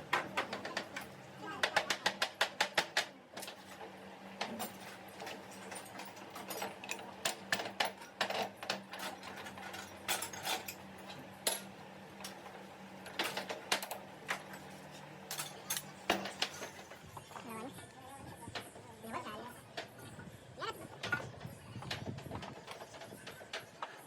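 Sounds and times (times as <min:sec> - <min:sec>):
metal parts clicking and tapping: 0:21.0 - 0:24.0.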